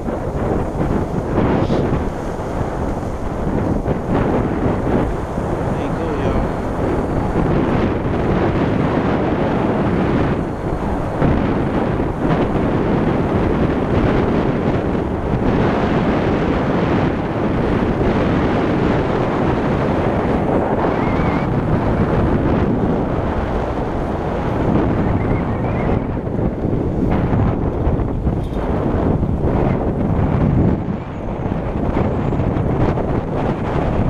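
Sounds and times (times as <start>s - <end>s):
wind buffeting microphone: 0.0s - 34.0s.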